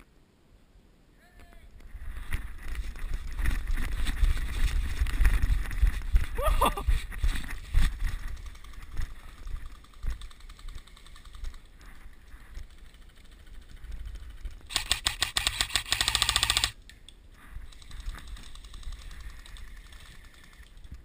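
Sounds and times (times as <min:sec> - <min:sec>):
airsoft gun automatic rattle: 0:07.5 - 0:21.0.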